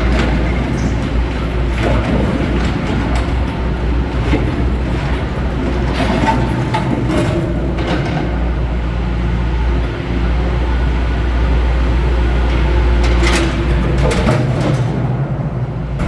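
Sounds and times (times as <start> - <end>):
metal clanks and rattles: 0.0 - 9.0, 12.5 - 16.0
diesel engine running: 0.0 - 16.0.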